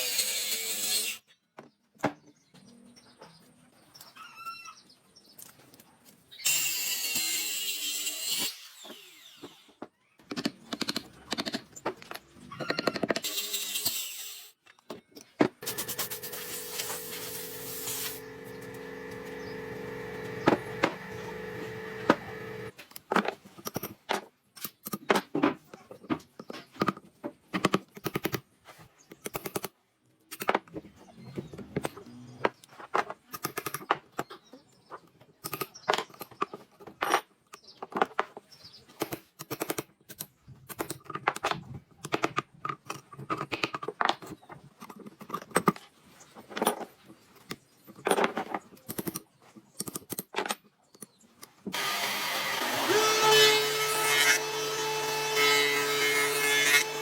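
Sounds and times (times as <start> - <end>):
woodworking machine humming: 15.6 - 22.7, 51.8 - 57.0
tools knocking on wood: 22.0 - 22.7.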